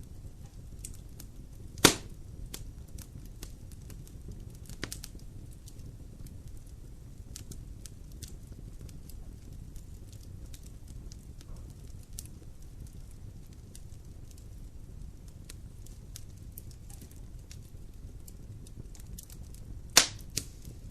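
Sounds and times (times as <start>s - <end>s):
fire popping: 0.0s - 20.9s
low rumble of flame: 0.0s - 20.9s
wood fire crackling: 0.0s - 20.9s.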